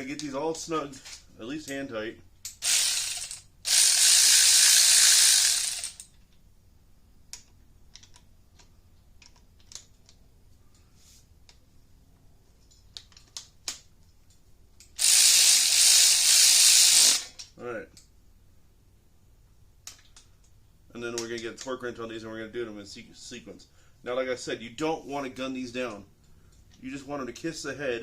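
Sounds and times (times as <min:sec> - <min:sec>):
hand ratchet clicking: 0:02.4 - 0:06.1, 0:14.8 - 0:18.1.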